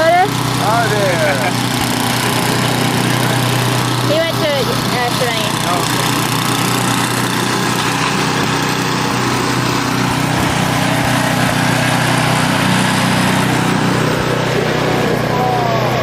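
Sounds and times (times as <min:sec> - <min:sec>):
small engine running: 0:00.0 - 0:16.0.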